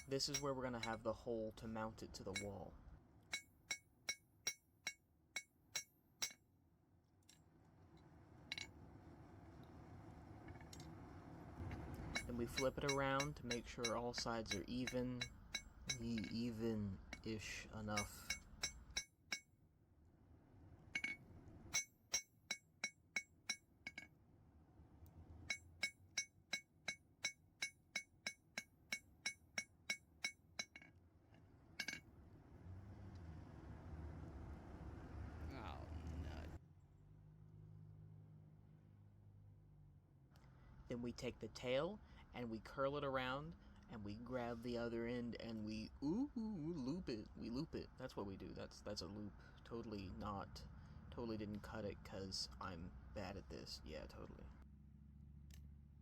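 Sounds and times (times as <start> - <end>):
hammer ringing on anvil: 0.0 - 1.1, 2.3 - 2.6, 12.1 - 19.4
hammer striking nail on anvil: 3.3 - 6.4, 12.1 - 16.4, 17.9 - 19.5.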